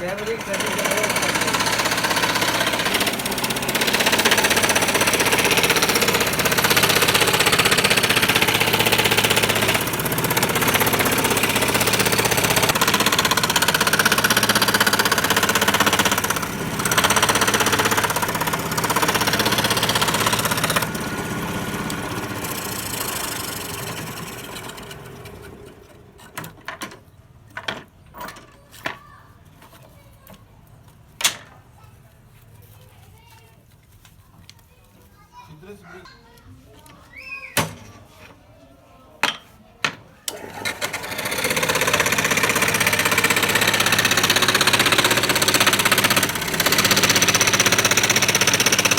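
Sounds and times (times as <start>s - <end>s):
machine running: 0.0s - 25.9s, 40.3s - 48.9s
power tool rattling: 0.0s - 26.9s, 40.3s - 48.9s.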